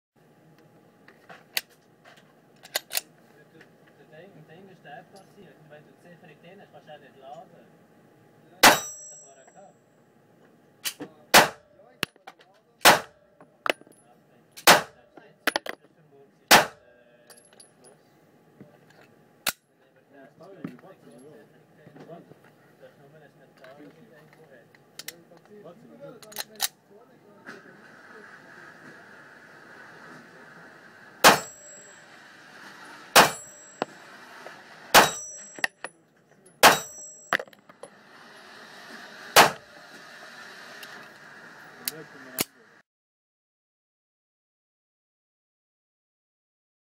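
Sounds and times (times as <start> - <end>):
pistol shots: 8.6 - 8.9, 11.3 - 11.6, 12.8 - 13.2, 14.6 - 15.0, 16.5 - 16.8, 31.2 - 31.8, 33.2 - 33.6, 34.9 - 35.3, 36.6 - 37.1, 39.4 - 39.6
faint sharp bangs and clinks: 8.6 - 9.7, 17.2 - 18.1, 31.2 - 32.2, 32.8 - 34.2, 34.9 - 38.0.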